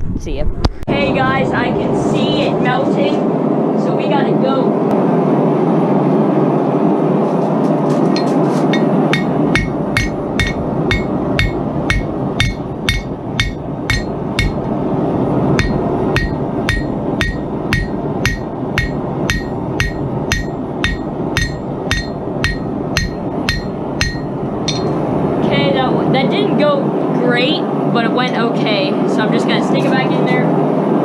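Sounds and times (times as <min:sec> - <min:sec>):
hammer striking hot metal on anvil: 0:08.2 - 0:14.8, 0:15.5 - 0:25.0.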